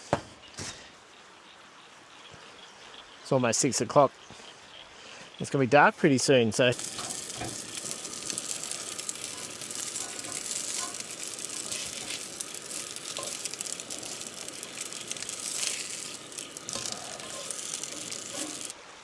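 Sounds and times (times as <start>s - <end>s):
meat sizzling in a skillet: 6.7s - 18.8s.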